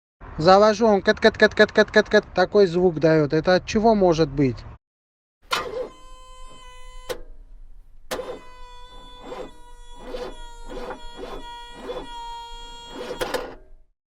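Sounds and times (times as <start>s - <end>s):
steady whine: 5.5s - 13.8s.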